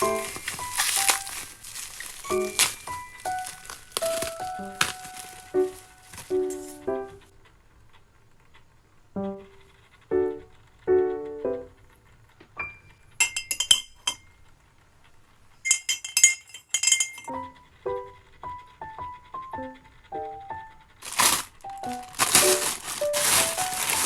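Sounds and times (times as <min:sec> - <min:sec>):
glass clinking: 0:00.0 - 0:05.3, 0:13.2 - 0:14.3, 0:15.6 - 0:17.3
light piano background music: 0:00.0 - 0:07.4, 0:09.1 - 0:14.5, 0:17.3 - 0:24.0.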